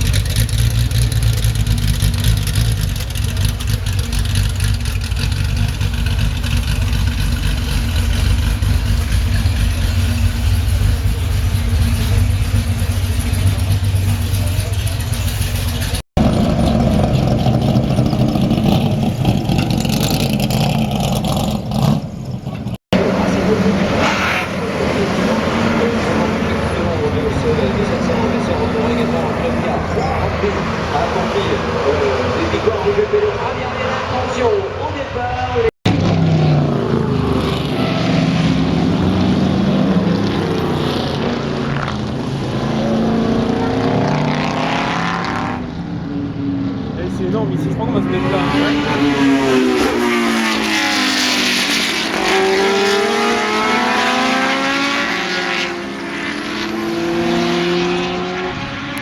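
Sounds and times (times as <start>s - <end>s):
racing car engines running: 0.0s - 59.0s.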